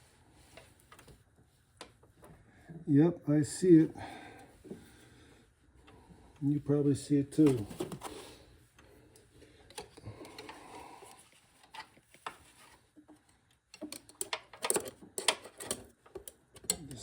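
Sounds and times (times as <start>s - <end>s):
hand tools clicking and tapping: 13.7s - 17.0s.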